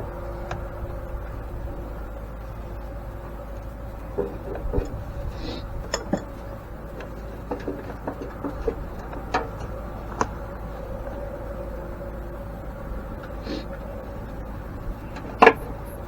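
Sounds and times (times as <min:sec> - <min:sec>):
steady background hum: 0:00.0 - 0:16.0
metal tools clinking: 0:05.9 - 0:06.4.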